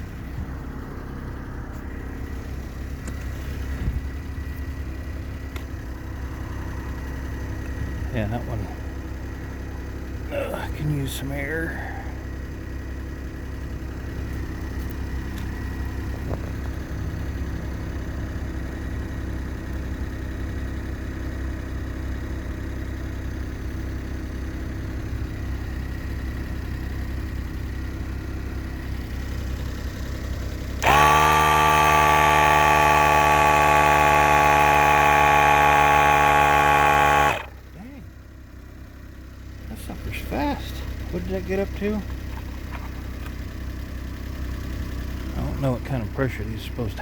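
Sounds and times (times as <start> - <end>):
car engine idling: 0.0 - 47.0
air compressor buzzing: 30.8 - 37.8.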